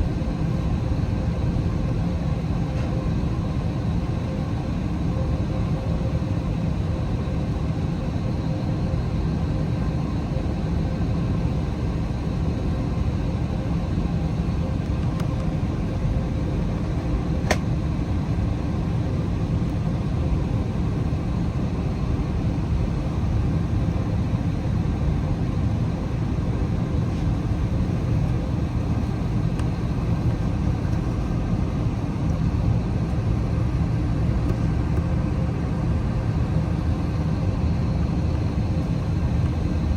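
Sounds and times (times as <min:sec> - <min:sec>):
jet engine cabin roar: 0:00.0 - 0:39.9.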